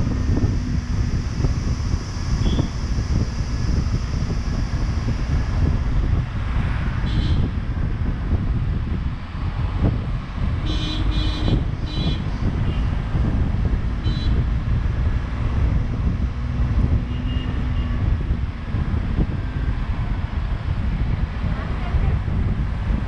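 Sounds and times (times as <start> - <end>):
road and wind noise: 0.0 - 23.0
car horn honking: 2.4 - 2.8, 7.0 - 7.5, 10.6 - 12.9, 14.0 - 14.4, 17.1 - 18.0.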